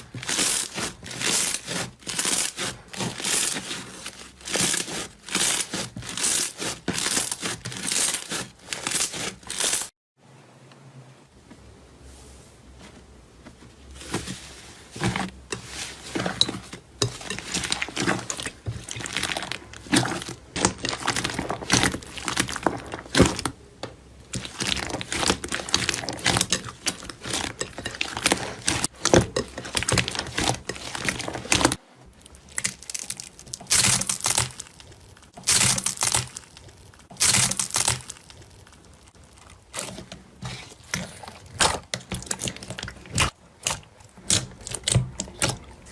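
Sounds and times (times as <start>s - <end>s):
slime squishing and popping: 24.3s - 40.0s.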